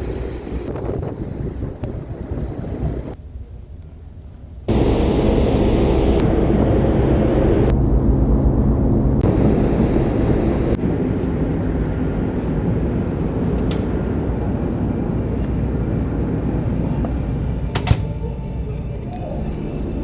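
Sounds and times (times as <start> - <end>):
ship engine droning: 0.0 - 3.2, 4.7 - 10.8
wind noise: 0.0 - 3.2, 7.7 - 11.7.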